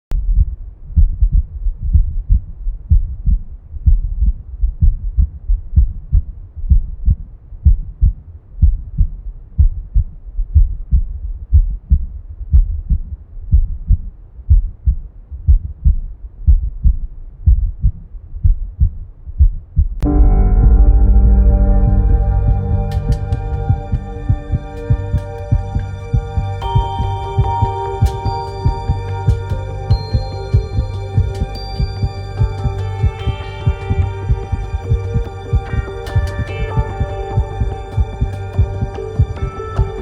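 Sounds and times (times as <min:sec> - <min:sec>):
heartbeat thuds: 0:00.2 - 0:40.0
soft sustained music: 0:20.0 - 0:40.0.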